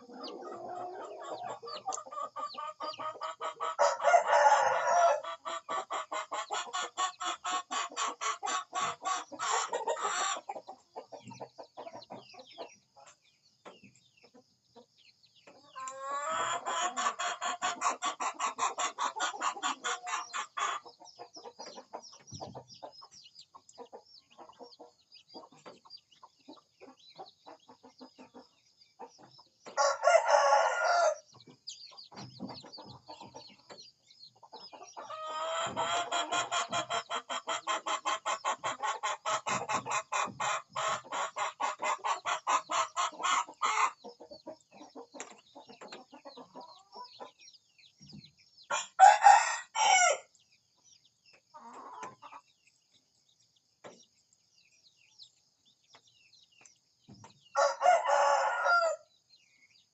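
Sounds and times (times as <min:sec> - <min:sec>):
chickens clucking: 0:00.0 - 0:59.9
rooster crowing: 0:03.8 - 0:05.2, 0:29.8 - 0:31.2, 0:48.7 - 0:50.2, 0:57.6 - 0:59.0.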